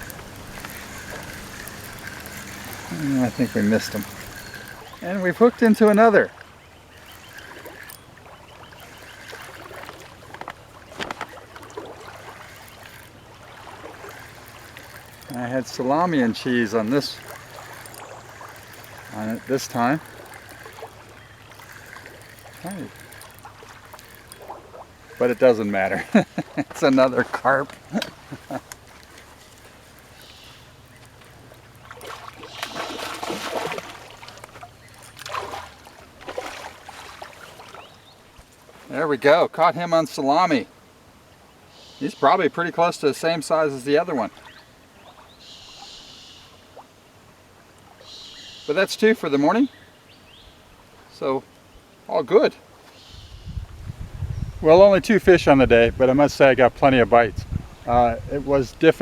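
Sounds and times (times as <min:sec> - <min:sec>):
sharp clicks: 0:00.0 - 0:08.1, 0:14.0 - 0:26.5
water splashing and sloshing: 0:00.0 - 0:39.0.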